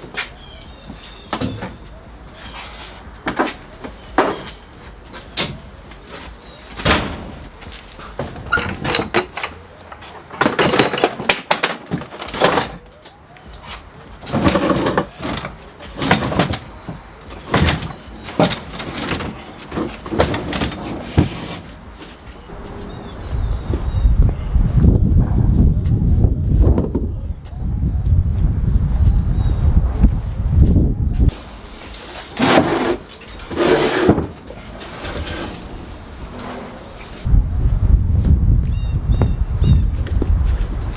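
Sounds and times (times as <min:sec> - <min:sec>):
knocks and clunks: 0:03.2 - 0:13.0.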